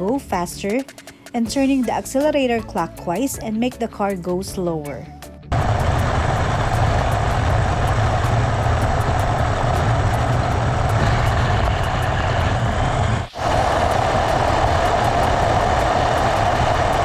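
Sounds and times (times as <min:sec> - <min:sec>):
rc truck electric motor: 0:05.6 - 0:17.0.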